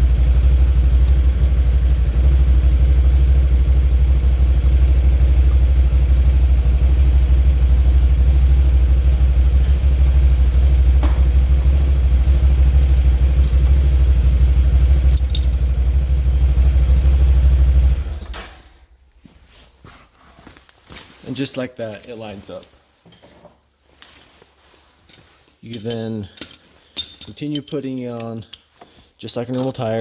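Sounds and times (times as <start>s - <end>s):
atv engine idling: 0.0s - 18.3s.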